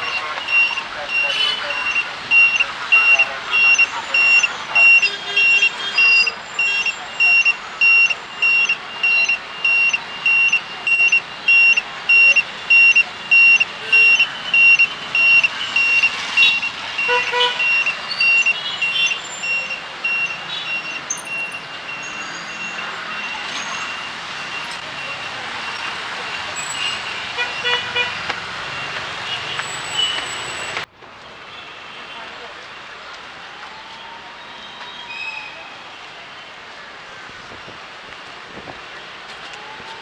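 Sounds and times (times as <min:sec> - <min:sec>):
vehicle horns honking: 0:00.0 - 0:08.7, 0:11.5 - 0:19.7, 0:26.8 - 0:28.3
high electronic beeper: 0:00.0 - 0:16.7, 0:17.6 - 0:24.8
street traffic hiss: 0:00.0 - 0:34.9, 0:35.5 - 0:40.0.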